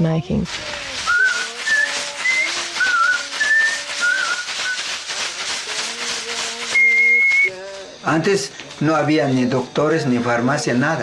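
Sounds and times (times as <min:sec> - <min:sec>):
fast rustling shake: 0:00.4 - 0:09.4
person whistling a song: 0:01.1 - 0:04.9, 0:06.7 - 0:07.6.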